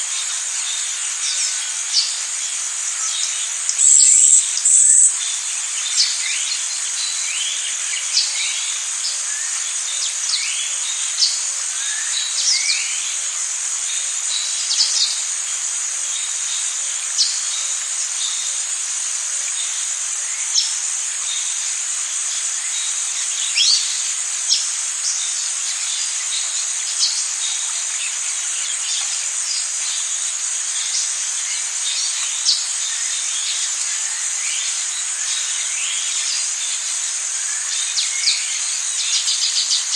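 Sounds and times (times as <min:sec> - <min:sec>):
insects droning: 0:00.0 - 0:39.9
bird chirps: 0:03.7 - 0:05.2.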